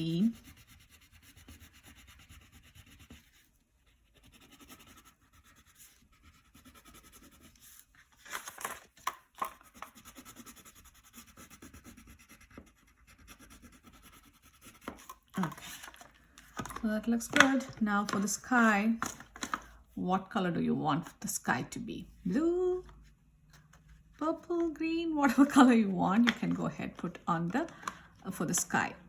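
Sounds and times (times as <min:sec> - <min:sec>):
crayon scribbling on paper: 0:00.0 - 0:07.9, 0:09.6 - 0:15.9.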